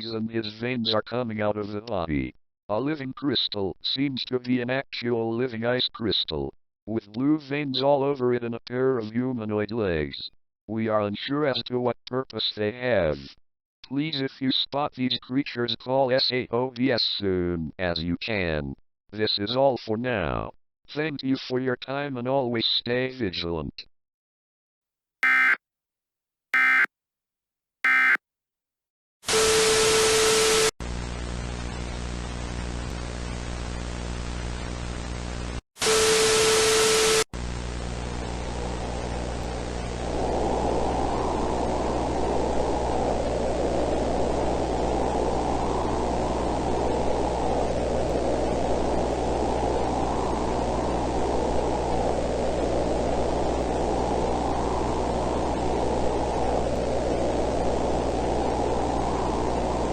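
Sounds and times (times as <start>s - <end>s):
digital data bursts: 25.2s - 25.6s, 26.6s - 26.9s, 27.9s - 28.2s
hissing static: 25.2s - 25.6s, 26.6s - 26.9s, 29.3s - 59.9s
static blasts with steady tone: 25.2s - 25.6s, 26.6s - 26.9s, 27.9s - 28.2s, 29.3s - 59.9s
low electrical hum: 37.4s - 59.9s.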